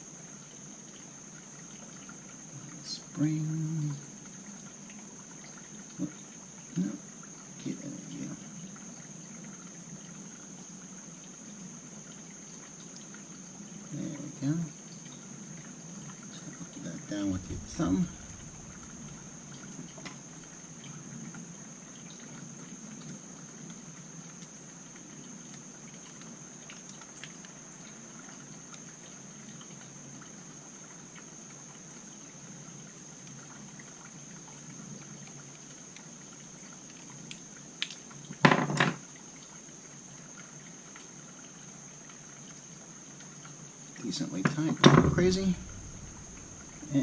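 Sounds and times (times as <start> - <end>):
background hiss: 0.0 - 47.0
faint high whine: 2.5 - 4.1, 16.3 - 21.3, 44.0 - 47.0.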